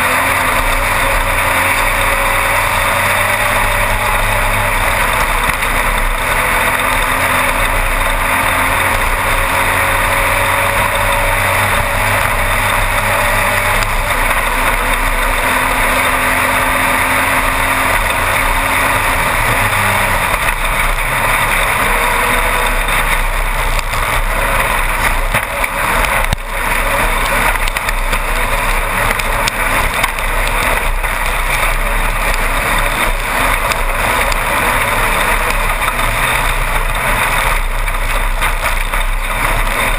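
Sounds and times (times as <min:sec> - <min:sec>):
car engine running hard: 0:00.0 - 0:39.9
wind and terrain noise: 0:00.0 - 0:39.9.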